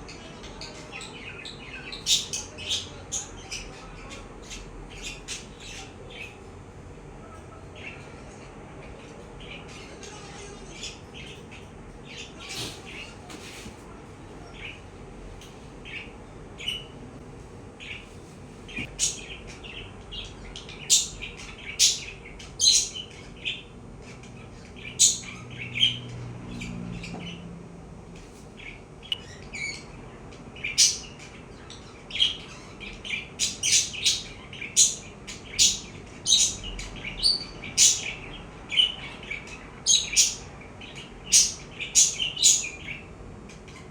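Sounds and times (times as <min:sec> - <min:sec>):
budgerigar chirping: 0:19.0 - 0:23.7, 0:24.4 - 0:27.4, 0:30.6 - 0:43.1.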